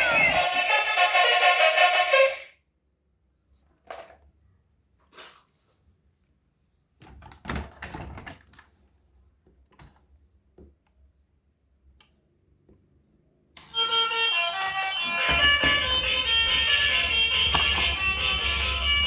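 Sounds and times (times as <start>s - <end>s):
loud tune playing: 0.0s - 2.5s, 13.7s - 19.0s.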